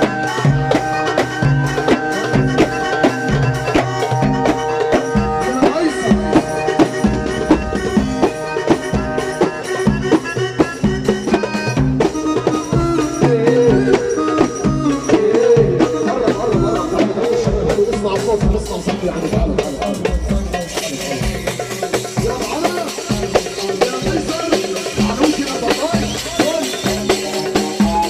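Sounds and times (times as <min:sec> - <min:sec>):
sustained melody line: 0:00.0 - 0:21.7
drums and percussion beat: 0:00.0 - 0:28.0.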